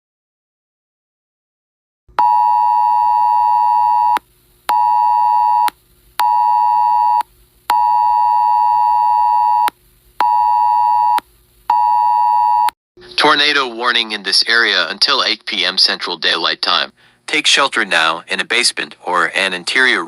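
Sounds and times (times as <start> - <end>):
two-tone emergency alarm from phone: 2.2 - 9.7, 10.3 - 12.7.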